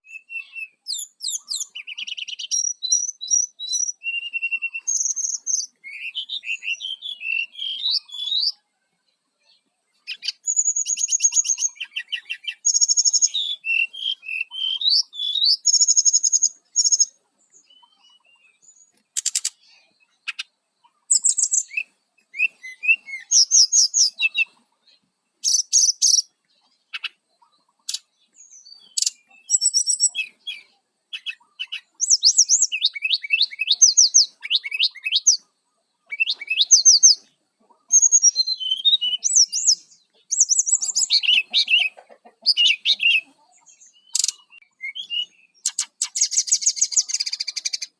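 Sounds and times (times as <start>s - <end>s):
bird singing chirps and trills: 0.0s - 47.9s.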